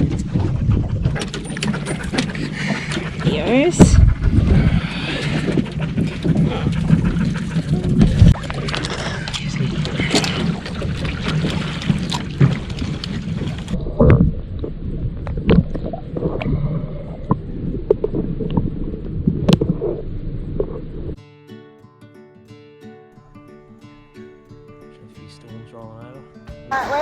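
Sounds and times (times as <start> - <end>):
outboard motor running: 0.0 - 12.8
water and wind noise: 0.0 - 21.2.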